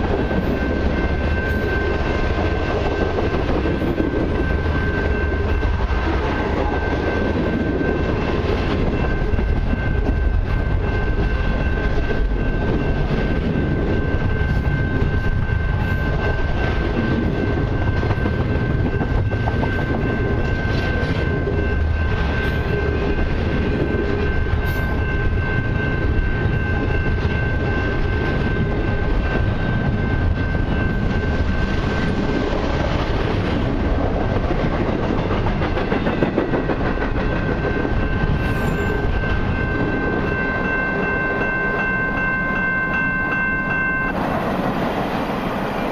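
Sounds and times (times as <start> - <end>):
train cars clanking: 0.0 - 45.9
train wheels rumbling on rail: 0.0 - 45.9
high-pitched tone: 37.6 - 44.4.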